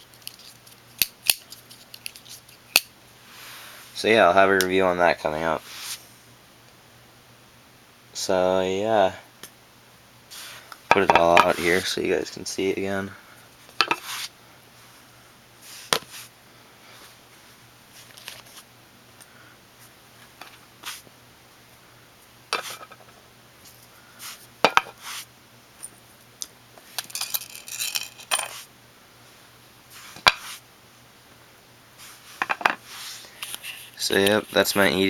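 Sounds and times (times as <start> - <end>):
metal items clinking on table: 27.0 - 28.6.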